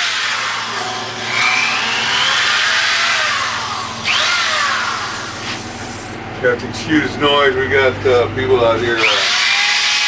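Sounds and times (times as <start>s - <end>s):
power drill scouring metal: 0.0s - 6.2s, 9.0s - 10.0s.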